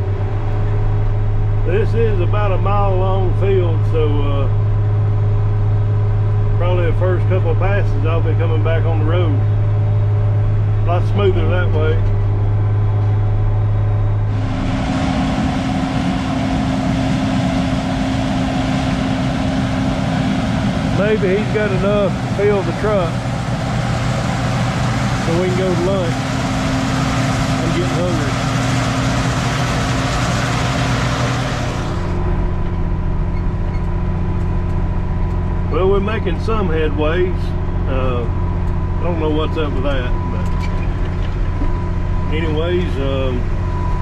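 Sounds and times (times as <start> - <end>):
diesel engine running: 0.0 - 44.0
loud rushing hiss: 14.3 - 32.2.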